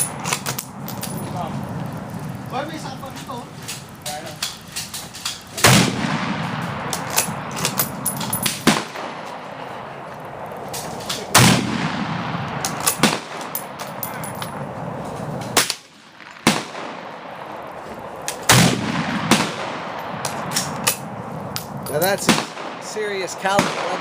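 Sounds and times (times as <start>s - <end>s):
distant gunfire cracks: 5.5s - 9.6s, 10.8s - 14.0s, 15.5s - 24.0s
loud rifle shots: 5.5s - 9.9s, 11.0s - 14.0s, 15.5s - 17.7s, 18.3s - 21.2s, 22.1s - 24.0s.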